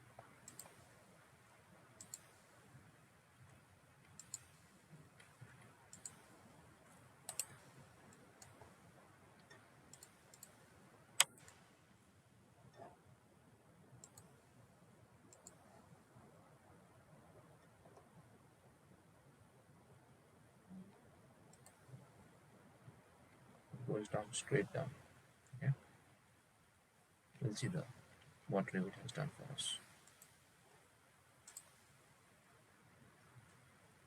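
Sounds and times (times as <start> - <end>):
faint room hiss: 0.0 - 34.0
computer mouse clicking: 0.2 - 1.0, 2.0 - 2.6, 3.4 - 8.8, 9.4 - 11.6, 14.0 - 14.3, 15.3 - 15.8, 20.9 - 22.0, 29.8 - 30.5, 31.4 - 32.0.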